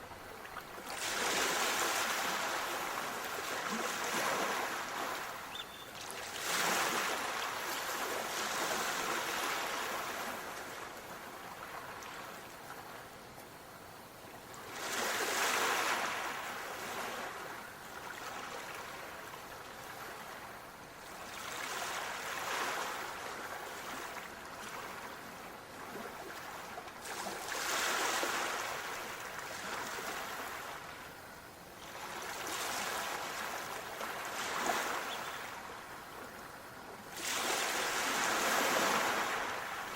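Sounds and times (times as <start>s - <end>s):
sea waves washing in: 0.0s - 12.3s, 19.9s - 31.3s, 31.9s - 39.9s.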